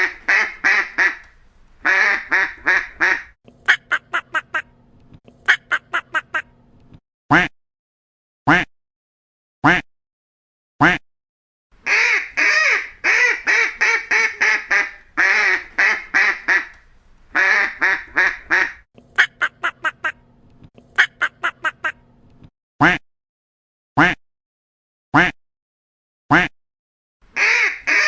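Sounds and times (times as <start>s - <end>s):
ducks quacking: 0.0s - 3.3s, 11.8s - 18.8s, 27.4s - 28.0s.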